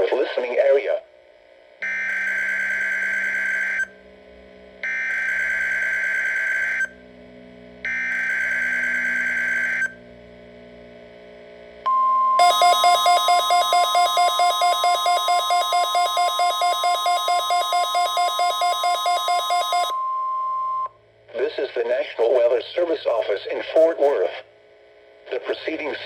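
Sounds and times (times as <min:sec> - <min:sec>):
rapid alarm beeps: 0:04.8 - 0:06.9, 0:07.9 - 0:09.9, 0:12.4 - 0:20.1
steady warning alarm tone: 0:04.8 - 0:06.9, 0:07.9 - 0:10.0, 0:12.4 - 0:20.0.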